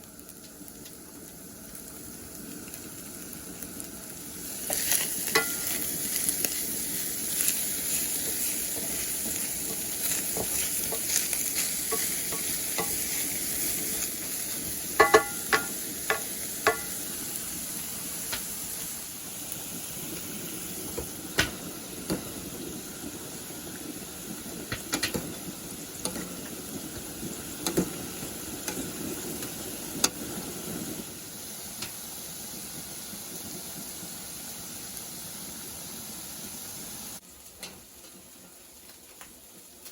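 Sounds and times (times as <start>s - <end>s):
food sizzling in a frying pan: 0.0s - 39.9s
utensil stirring and scraping: 4.7s - 14.0s.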